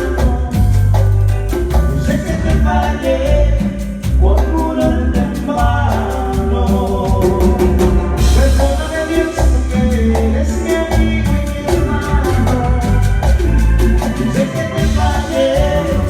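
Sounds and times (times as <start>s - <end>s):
latin dance music with singing: 0.0s - 16.0s.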